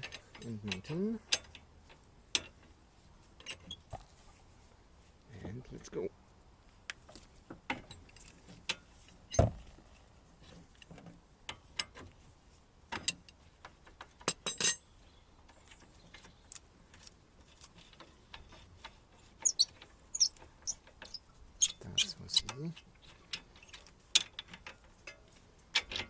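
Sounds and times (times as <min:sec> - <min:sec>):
metallic clicks and knocks: 0:17.8 - 0:26.0
high squeaky clicks: 0:18.4 - 0:22.6.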